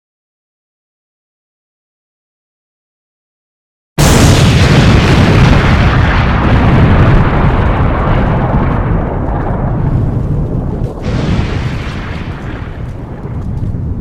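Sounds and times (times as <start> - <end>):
explosion blast and rumble: 4.0 - 14.0.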